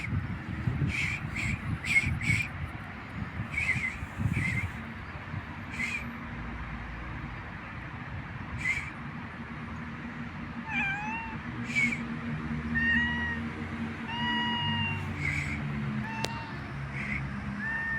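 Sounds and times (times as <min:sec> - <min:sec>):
cat meowing: 0:10.6 - 0:12.0, 0:12.8 - 0:15.4, 0:16.0 - 0:16.7, 0:17.6 - 0:17.9.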